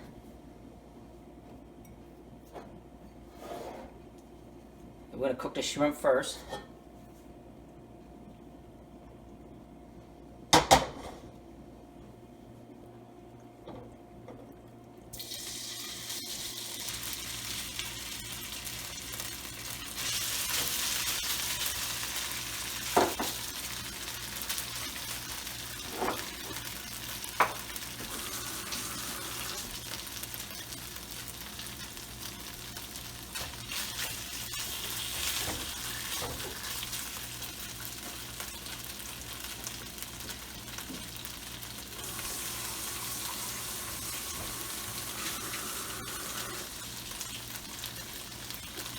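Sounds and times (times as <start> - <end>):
shrimp sizzling in hot oil: 15.2 - 48.9.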